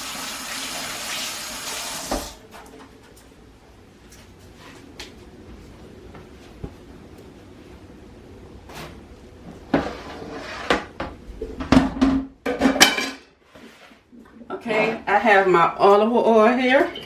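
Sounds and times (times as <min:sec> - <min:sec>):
kitchen items knocking and rattling: 0:10.6 - 0:13.3.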